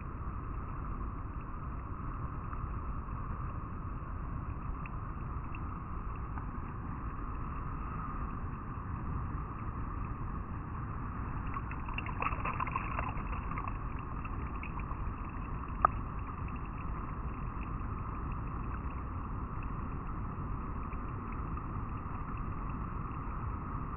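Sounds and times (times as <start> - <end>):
water splashing: 11.4 - 18.0
river flowing over rocks: 11.4 - 18.4.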